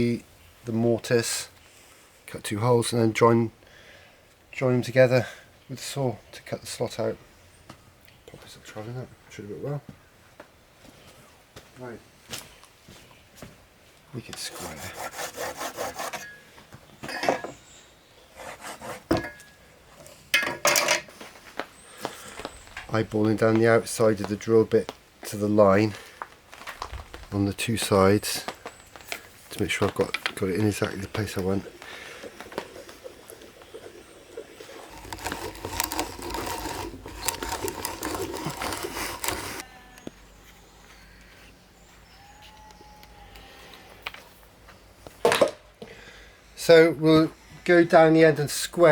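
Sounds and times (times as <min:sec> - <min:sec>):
tools clinking on wooden bench: 0:17.0 - 0:17.6, 0:20.4 - 0:21.1
scraping: 0:34.7 - 0:39.7
hand drill boring into wood: 0:34.9 - 0:39.7.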